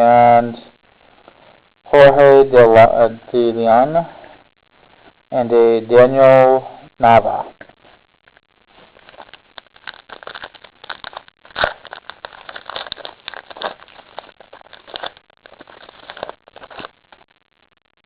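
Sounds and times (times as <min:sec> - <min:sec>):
wrapper crinkling and tearing: 0:08.7 - 0:17.3.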